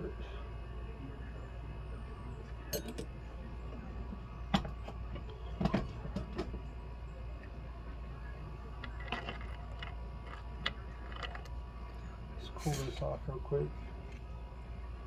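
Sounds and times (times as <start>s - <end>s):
steady low hum: 0.0s - 4.5s
small metal tools clicking: 2.8s - 3.0s.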